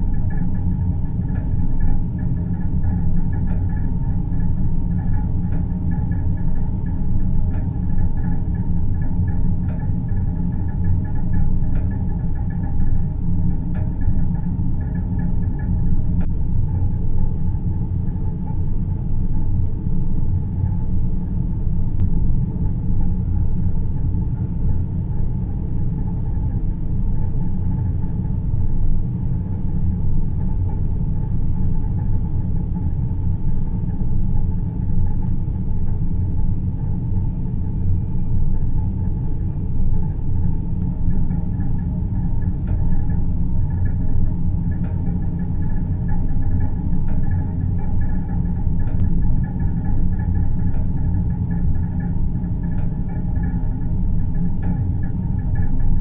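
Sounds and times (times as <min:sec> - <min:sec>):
faint hum tones: 0:00.0 - 0:56.0
low rumbling drone: 0:00.0 - 0:56.0.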